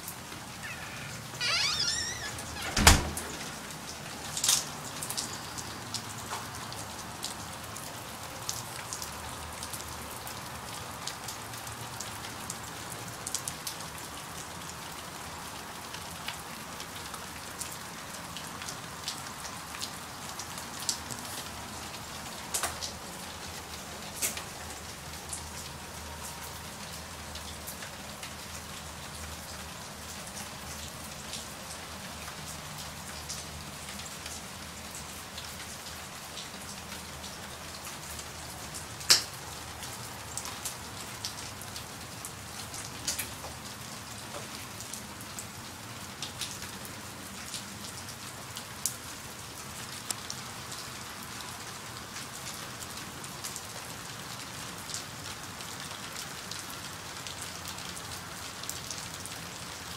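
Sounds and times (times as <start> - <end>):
rain falling: 0.0 - 59.9.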